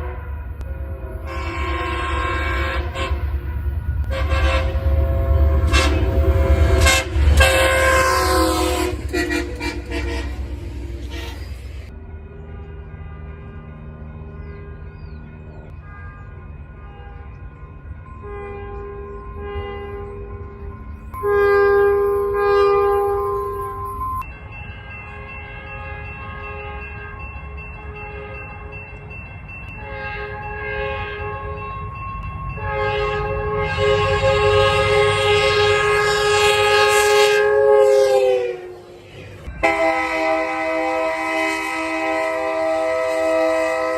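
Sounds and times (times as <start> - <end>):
locomotive air horn blasts: 0.0 - 13.7, 18.1 - 24.2, 29.8 - 31.9, 32.6 - 43.9.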